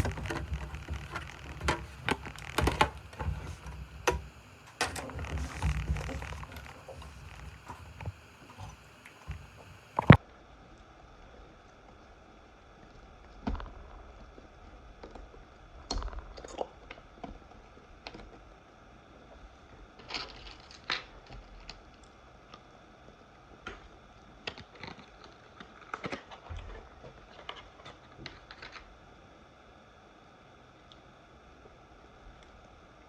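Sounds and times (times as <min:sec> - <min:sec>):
laptop keys clicking and tapping: 0:00.0 - 0:10.2.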